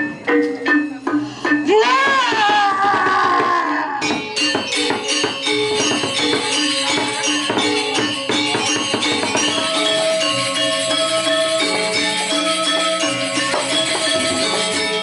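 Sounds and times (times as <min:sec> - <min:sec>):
metallophones struck in quick rhythm: 0:00.0 - 0:15.0
small cymbals jingling: 0:04.0 - 0:15.0.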